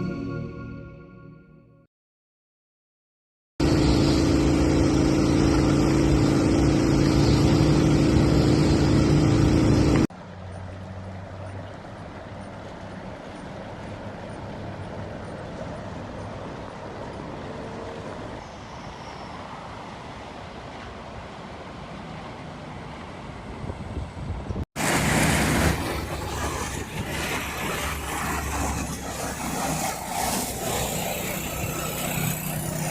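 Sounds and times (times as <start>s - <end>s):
vehicle engine running: 3.6s - 18.3s.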